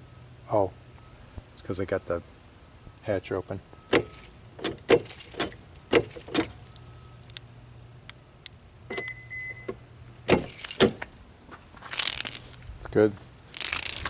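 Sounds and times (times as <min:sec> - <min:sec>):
low steady hum: 0:00.0 - 0:14.0
car door locks clicking: 0:03.9 - 0:06.6, 0:08.9 - 0:11.1
keys jangling: 0:04.0 - 0:06.9, 0:10.3 - 0:11.2, 0:11.9 - 0:12.8.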